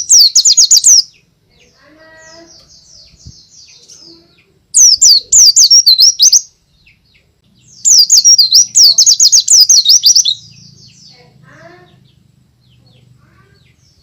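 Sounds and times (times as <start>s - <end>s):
bird singing high sliding chirps: 0.0s - 1.1s, 4.8s - 6.5s, 7.6s - 11.2s.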